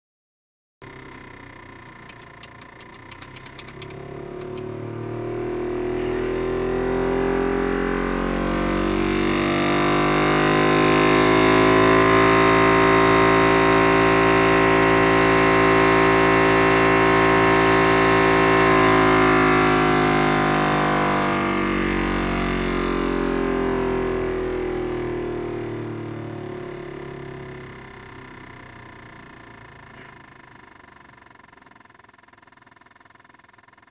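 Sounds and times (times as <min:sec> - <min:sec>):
clicks: 0:02.0 - 0:04.7.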